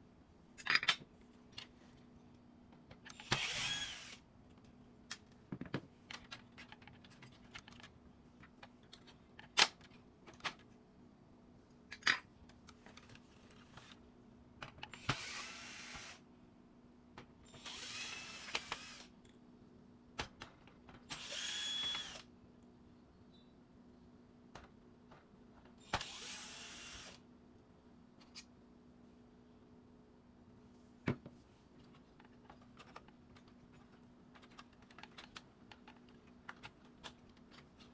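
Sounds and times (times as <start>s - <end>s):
electric screwdriver running: 3.2s - 4.2s, 15.0s - 16.2s, 17.6s - 19.1s, 21.1s - 22.2s, 25.9s - 27.2s
clicks and knocks of plastic parts: 4.5s - 10.7s, 20.2s - 21.1s, 24.5s - 25.8s, 31.0s - 37.9s.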